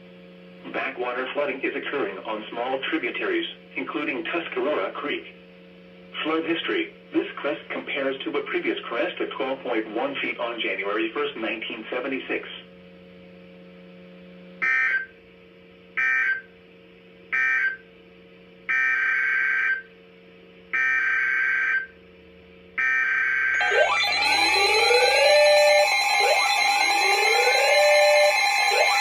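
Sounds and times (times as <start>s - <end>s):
alert tone with rising sweeps: 23.5s - 29.0s
screechy digital data bursts: 23.6s - 29.0s.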